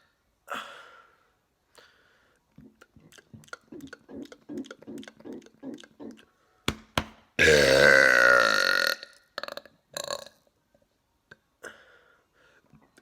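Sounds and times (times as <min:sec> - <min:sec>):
man burping: 0:07.4 - 0:10.4.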